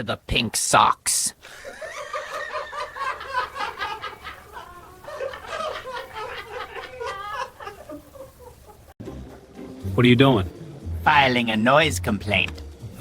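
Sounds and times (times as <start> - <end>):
person laughing: 1.4 - 9.4.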